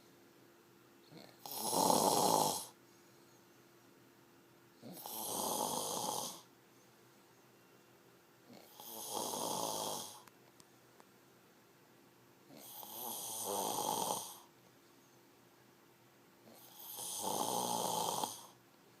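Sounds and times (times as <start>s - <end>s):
person snoring loudly: 1.1s - 2.8s, 4.8s - 6.5s, 8.5s - 10.2s, 12.5s - 14.5s, 16.5s - 18.6s.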